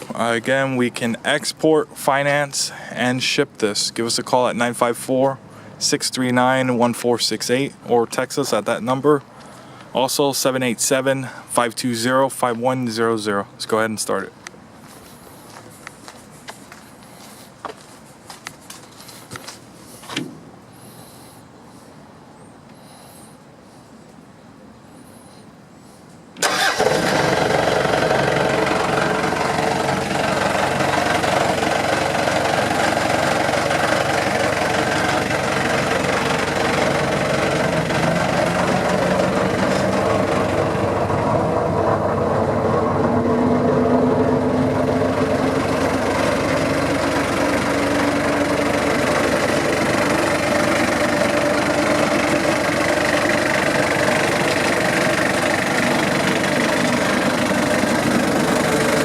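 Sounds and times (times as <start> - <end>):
diesel engine idling: 0.0 - 10.1, 26.4 - 59.0.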